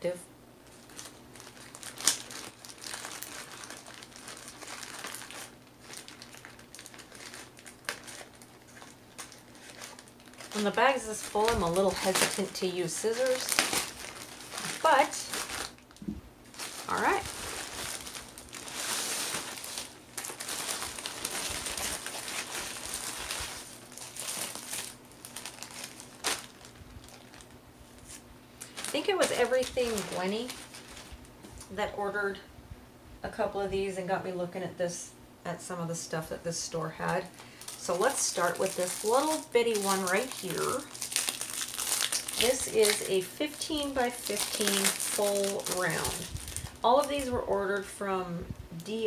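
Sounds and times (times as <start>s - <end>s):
plastic bag crinkling: 0.6s - 31.8s, 37.0s - 47.9s
plastic bag snap: 1.8s - 3.4s.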